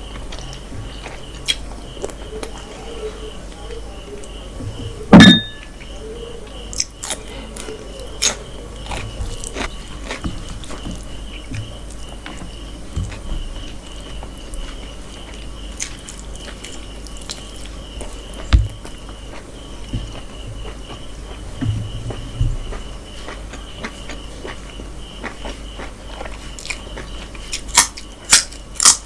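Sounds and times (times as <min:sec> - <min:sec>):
chewing food: 0:00.0 - 0:29.0
faint steady high tone: 0:01.9 - 0:09.0.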